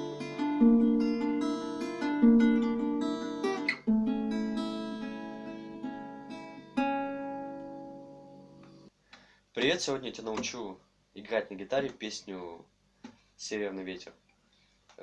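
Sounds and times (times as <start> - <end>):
fingerstyle acoustic guitar: 0.0 - 8.9.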